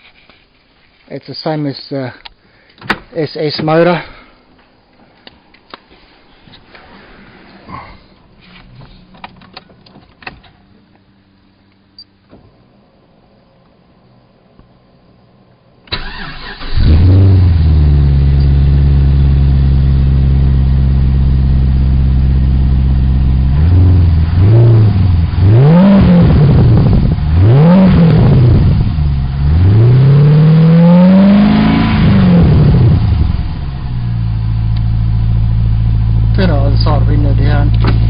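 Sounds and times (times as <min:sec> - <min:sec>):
engine cranking and starting: 0:15.9 - 0:17.4
engine idling and revving: 0:16.1 - 0:38.0.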